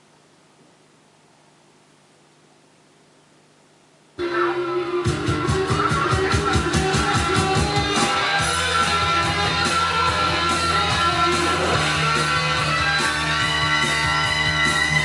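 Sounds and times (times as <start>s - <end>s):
guitar music from vinyl record: 4.2s - 15.0s
rhythmic guitar strumming: 4.2s - 15.0s
steady bass line: 5.0s - 15.0s.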